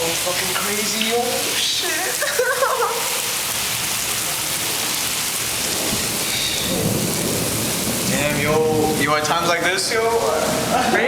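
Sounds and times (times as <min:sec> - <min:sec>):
heavy rain: 0:00.0 - 0:11.0
wind: 0:03.3 - 0:11.0.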